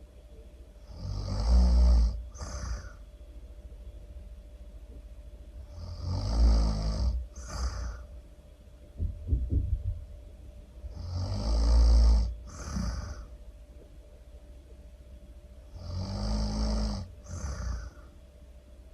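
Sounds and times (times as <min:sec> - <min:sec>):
loud rumbling snoring: 0:00.8 - 0:03.0, 0:05.6 - 0:08.1, 0:10.9 - 0:13.3, 0:15.7 - 0:18.1
breathy out-breath: 0:07.3 - 0:08.1, 0:12.4 - 0:13.4, 0:17.2 - 0:18.2.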